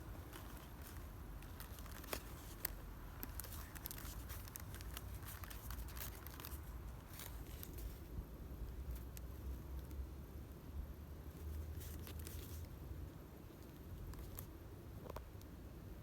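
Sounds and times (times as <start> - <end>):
faint crackling clicks: 0.1 - 8.0.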